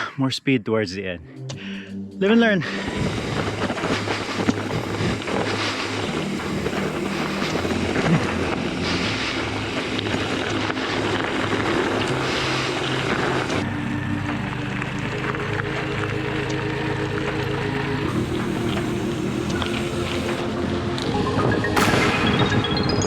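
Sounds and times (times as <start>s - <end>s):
background music: 0.0s - 23.0s
rough rumbling of bike tyres: 2.9s - 20.7s.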